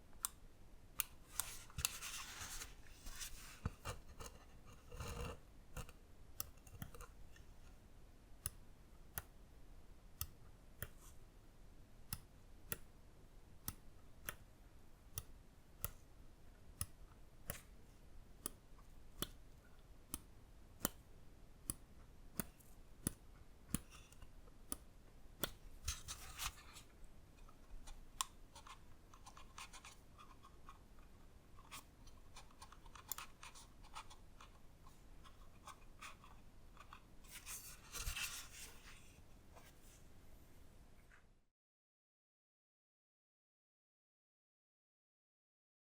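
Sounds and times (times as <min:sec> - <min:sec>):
mouse clicking: 0:10.2 - 0:11.2, 0:18.4 - 0:19.5, 0:20.1 - 0:21.0, 0:21.6 - 0:26.6.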